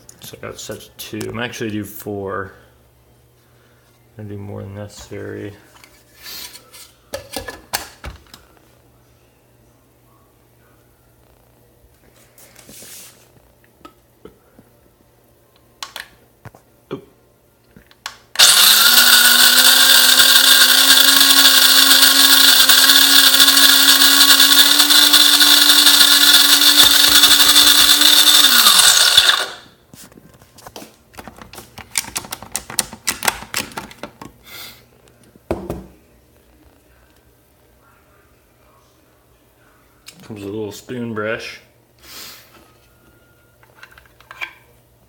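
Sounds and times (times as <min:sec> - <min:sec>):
coffee grinder motor whine: 0:18.4 - 0:29.7.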